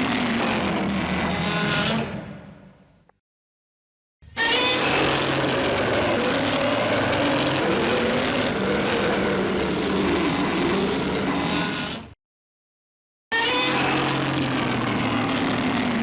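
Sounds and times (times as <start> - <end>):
harsh rasping monster roar: 0.0 - 2.2, 4.6 - 12.2, 13.6 - 16.0.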